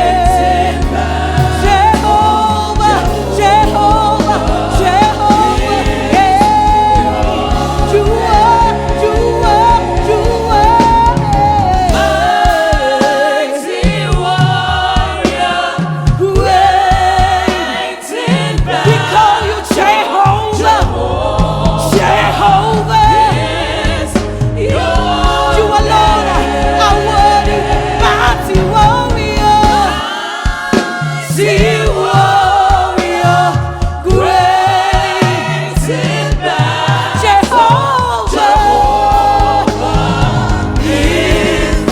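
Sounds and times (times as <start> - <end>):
bass line: 0.0 - 12.6, 20.6 - 30.0, 31.4 - 41.9
choir singing: 0.0 - 41.9.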